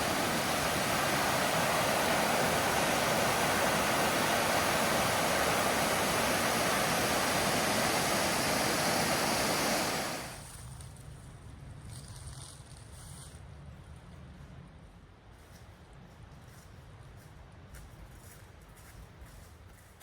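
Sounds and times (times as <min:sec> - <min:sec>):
waterfall roaring: 0:00.0 - 0:10.4.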